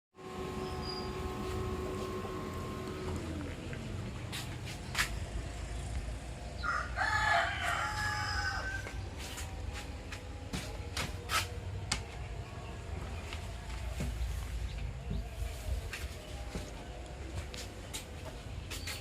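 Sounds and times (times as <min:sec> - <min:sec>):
steady low hum: 0:00.2 - 0:18.8
rooster crowing: 0:06.6 - 0:09.0.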